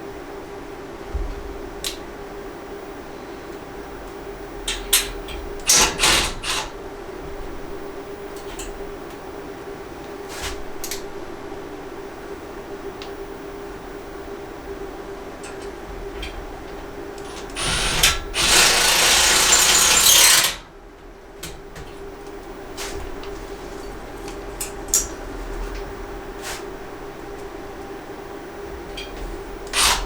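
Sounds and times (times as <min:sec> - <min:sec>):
power drill running: 0:05.7 - 0:06.7, 0:17.2 - 0:20.7, 0:29.7 - 0:30.0.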